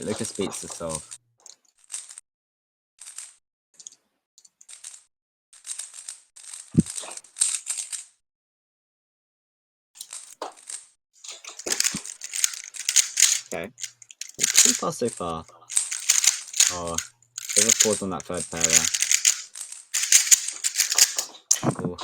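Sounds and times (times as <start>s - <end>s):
plastic puzzle cube clicking: 11.4s - 15.0s, 15.7s - 21.6s.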